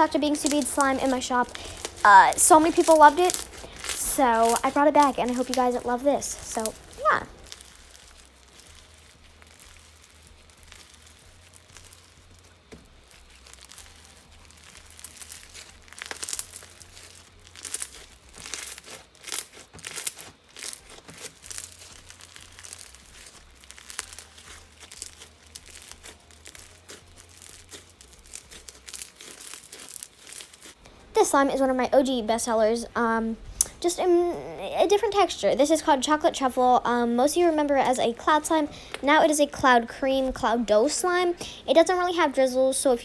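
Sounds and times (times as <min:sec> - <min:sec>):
slime crunching and popping: 0:00.0 - 0:31.4, 0:33.5 - 0:33.9.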